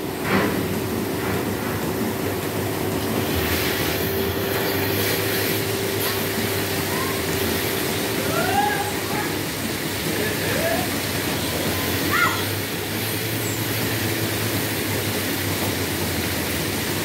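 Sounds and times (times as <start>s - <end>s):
constant machine hum: 0.0s - 17.0s
machinery rumble: 0.0s - 17.0s.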